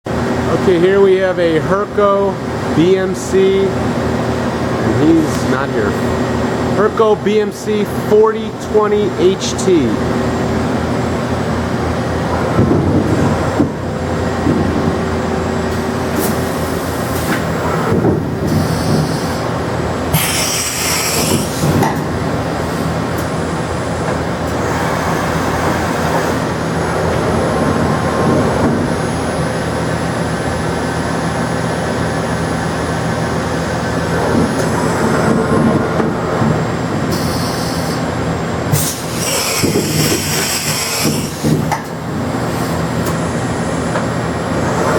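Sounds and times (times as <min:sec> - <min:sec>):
machinery humming: 0:00.1 - 0:44.9.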